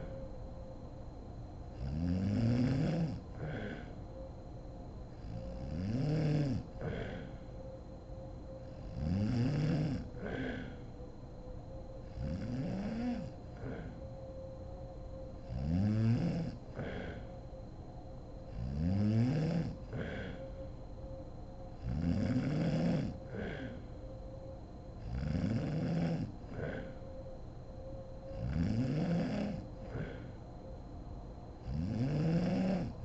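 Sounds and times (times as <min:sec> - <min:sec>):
woman snoring: 0:01.8 - 0:03.9, 0:05.2 - 0:07.4, 0:08.7 - 0:10.9, 0:12.1 - 0:14.0, 0:15.5 - 0:17.3, 0:18.5 - 0:20.5, 0:21.8 - 0:24.0, 0:25.0 - 0:27.0, 0:28.3 - 0:30.4, 0:31.6 - 0:33.0
breathy exhale: 0:03.4 - 0:04.0, 0:06.8 - 0:07.6, 0:10.2 - 0:11.0, 0:13.6 - 0:14.0, 0:16.8 - 0:17.4, 0:19.9 - 0:20.6, 0:23.3 - 0:24.0, 0:26.5 - 0:27.1, 0:29.8 - 0:30.4.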